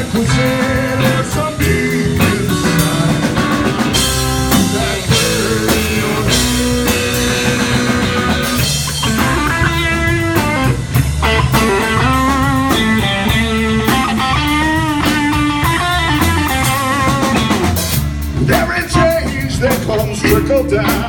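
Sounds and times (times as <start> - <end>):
bass guitar: 0.0 - 21.0
drums: 0.0 - 21.0
electric guitar lead with bent notes: 0.0 - 21.0.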